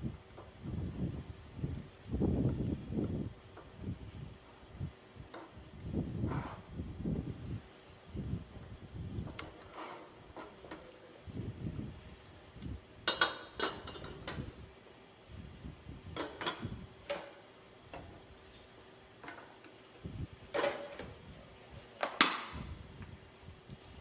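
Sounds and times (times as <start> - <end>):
utensils and cookware clinking: 13.0 - 14.5.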